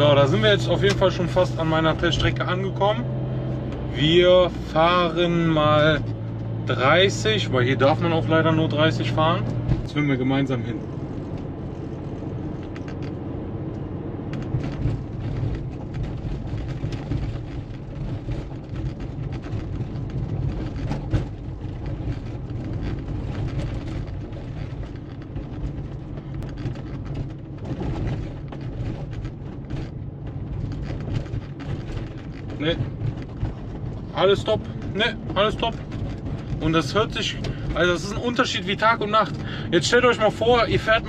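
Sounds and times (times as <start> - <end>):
car engine running: 0.0 - 41.0
road and tyre noise: 0.0 - 41.0.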